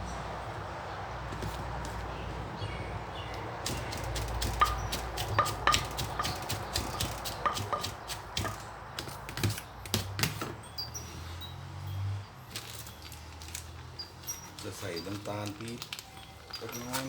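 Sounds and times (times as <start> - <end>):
pestle knocking in a mortar: 3.6 - 10.6.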